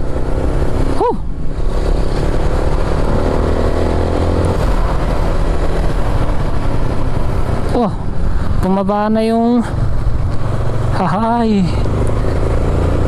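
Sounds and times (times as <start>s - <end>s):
wind noise on microphone: 0.0s - 8.8s
motorcycle engine running: 0.0s - 13.0s.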